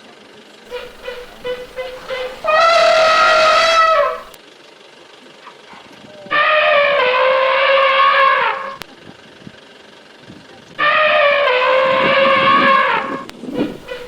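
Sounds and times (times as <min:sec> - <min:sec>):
elephant trumpeting: 0:00.7 - 0:04.4, 0:06.3 - 0:08.8, 0:10.8 - 0:14.0
rough low elephant sounds: 0:00.7 - 0:04.4, 0:11.5 - 0:14.0.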